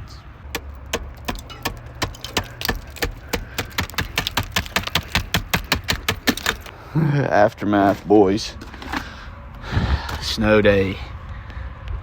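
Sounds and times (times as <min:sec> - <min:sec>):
ice being chipped: 0:00.5 - 0:06.8.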